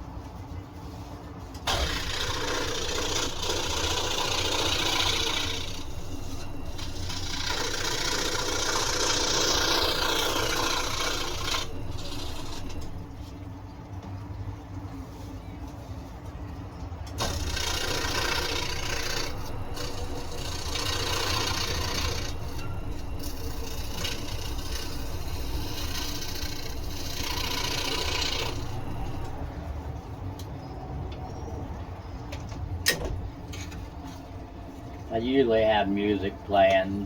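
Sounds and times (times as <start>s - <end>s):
saw blade rasping through wood: 1.7s - 13.3s, 17.2s - 29.5s
scroll saw running: 1.7s - 13.3s, 17.2s - 29.6s.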